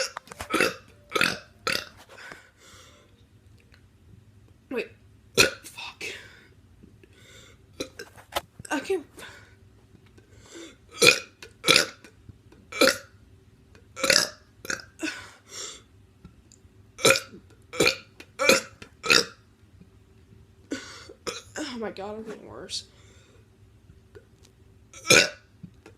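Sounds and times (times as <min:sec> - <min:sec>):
teenager burping: 0:00.0 - 0:02.0, 0:10.8 - 0:13.1, 0:14.0 - 0:15.3, 0:17.0 - 0:19.4, 0:20.7 - 0:21.8, 0:25.0 - 0:25.5.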